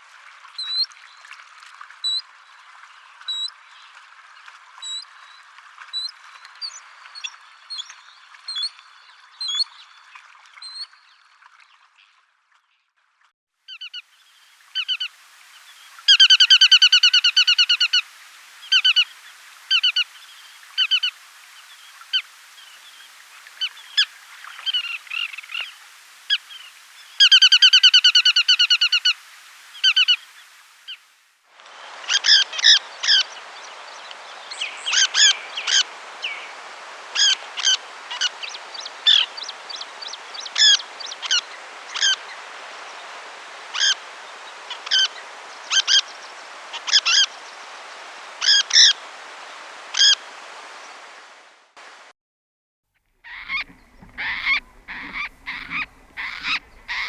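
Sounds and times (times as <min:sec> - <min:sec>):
bird calls: 0:13.7 - 0:31.1, 0:53.2 - 0:57.0
steady forest hiss: 0:13.7 - 0:52.1, 0:53.1 - 0:57.0.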